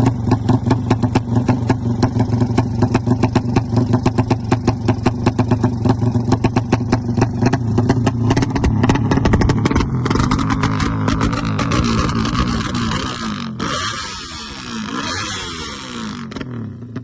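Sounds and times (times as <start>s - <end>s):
motorcycle engine revving: 0.0s - 17.0s.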